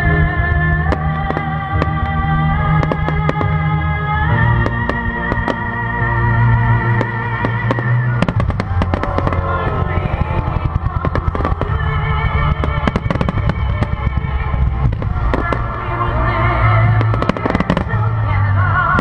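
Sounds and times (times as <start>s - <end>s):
fireworks bangs and crackles: 0.0s - 19.0s
loud music: 0.0s - 19.0s.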